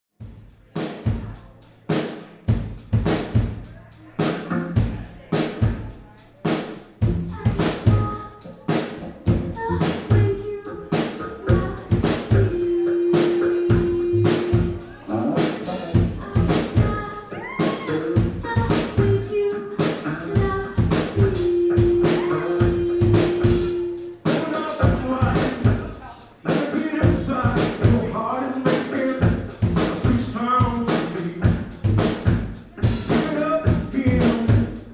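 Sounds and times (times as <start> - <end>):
snare and bass drum hits: 0.2 - 3.6
live band playing: 0.7 - 34.9.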